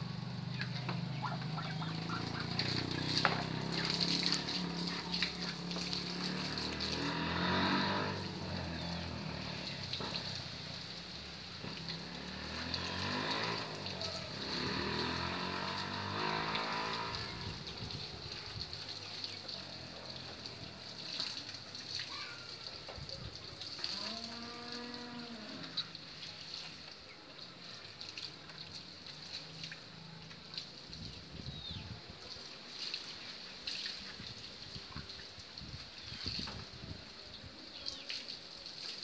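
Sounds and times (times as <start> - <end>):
vehicles passing: 0.0 - 23.2.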